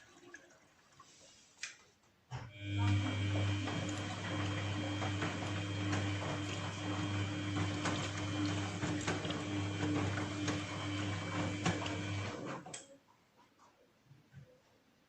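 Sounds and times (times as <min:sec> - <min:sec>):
washing machine humming: 0:02.3 - 0:12.8.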